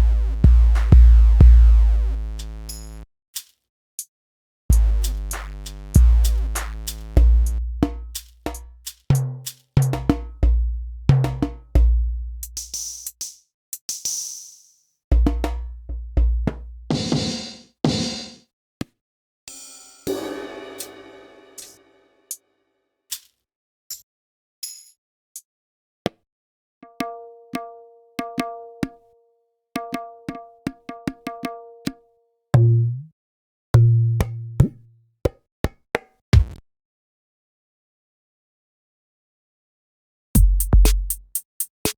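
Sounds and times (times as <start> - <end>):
deep kick drum booms: 0.0 - 1.9, 6.0 - 6.4, 40.4 - 41.2
loud deep low tone: 0.0 - 2.2
snare and hi-hat hits: 0.6 - 1.5, 2.4 - 3.6, 4.7 - 10.2, 12.4 - 14.8, 16.9 - 18.4, 19.5 - 21.8, 23.1 - 24.0, 40.4 - 41.9
pitched percussion hits: 20.1 - 22.0
electronic drum pattern: 40.4 - 41.9.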